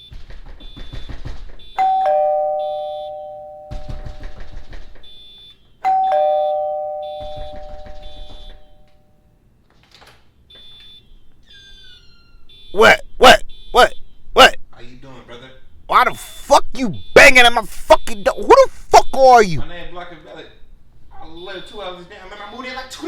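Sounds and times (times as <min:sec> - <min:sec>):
faint car alarm beeps: 0:00.0 - 0:09.5, 0:10.3 - 0:23.0
rapid knocking on door: 0:00.1 - 0:01.8, 0:03.7 - 0:05.1, 0:07.1 - 0:08.4
two-tone doorbell chime: 0:01.8 - 0:04.4, 0:05.8 - 0:09.1.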